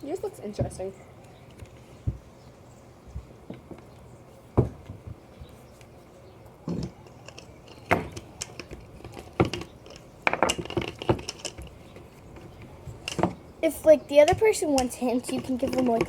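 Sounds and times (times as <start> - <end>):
tool scraping: 14.3 - 16.0.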